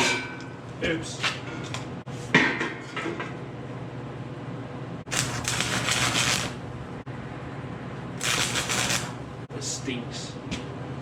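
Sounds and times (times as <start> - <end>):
steady low hum: 3.4 - 11.0
welding arc crackling: 5.1 - 6.6, 8.2 - 9.4.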